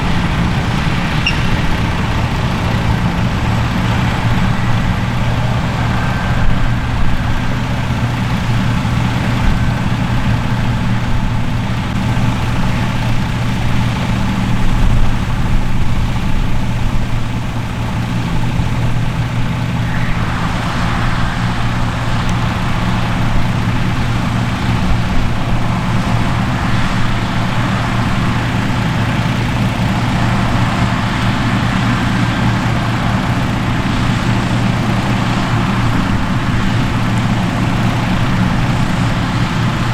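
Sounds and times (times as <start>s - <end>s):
high rushing noise: 0.0s - 13.5s, 18.6s - 39.9s
diesel engine droning: 0.0s - 39.9s.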